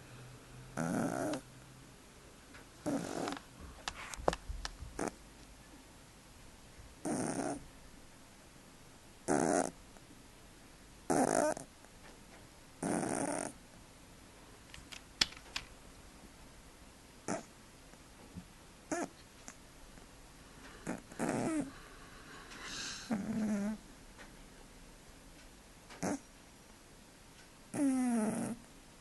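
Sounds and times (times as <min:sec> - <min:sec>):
cat snoring: 0:00.8 - 0:01.4, 0:02.8 - 0:03.4, 0:05.0 - 0:05.2, 0:07.0 - 0:07.6, 0:09.3 - 0:09.8, 0:11.1 - 0:11.7, 0:12.8 - 0:13.6, 0:17.3 - 0:17.5, 0:20.8 - 0:22.0, 0:22.6 - 0:23.8, 0:26.0 - 0:26.2, 0:27.7 - 0:28.6.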